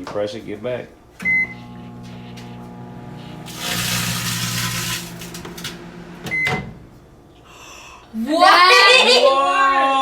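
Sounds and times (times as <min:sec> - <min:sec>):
microwave humming: 0:01.1 - 0:07.4
microwave beep: 0:01.2 - 0:06.8
foil bag hissing crackle: 0:03.5 - 0:05.4.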